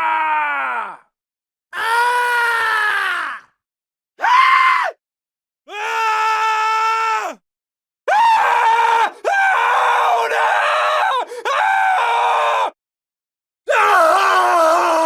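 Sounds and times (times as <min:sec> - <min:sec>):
man screaming: 0:08.1 - 0:12.7, 0:13.7 - 0:15.0.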